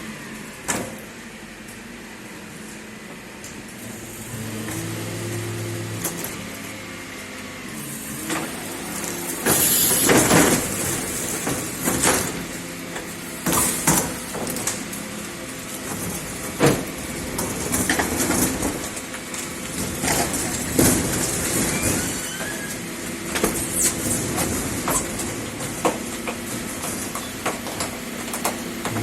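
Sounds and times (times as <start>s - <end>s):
garbage truck engine hum: 0.0s - 29.0s.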